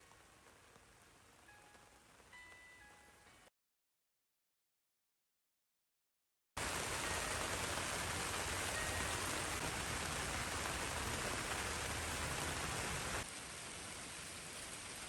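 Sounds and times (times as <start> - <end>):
heavy rain falling: 0.0 - 2.6, 6.6 - 15.0.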